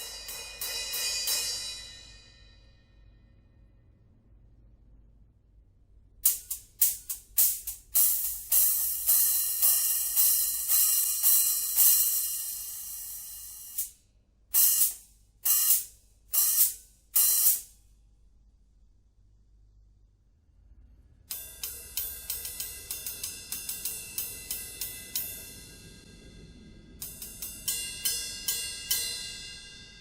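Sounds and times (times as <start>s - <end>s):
choked cymbal hits: 0.0s - 2.6s, 6.2s - 13.9s, 21.3s - 30.0s
cymbal struck with stick: 0.0s - 2.7s, 6.2s - 13.9s, 21.3s - 30.0s.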